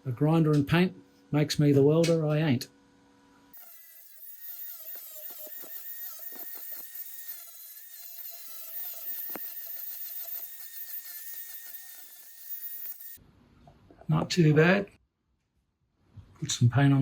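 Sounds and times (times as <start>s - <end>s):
power grinder whining on metal: 3.5s - 13.2s.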